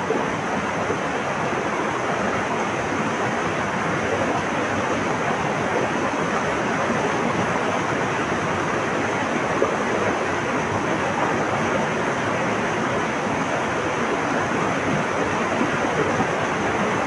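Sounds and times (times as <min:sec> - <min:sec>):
flowing water rushing: 0:00.0 - 0:17.0.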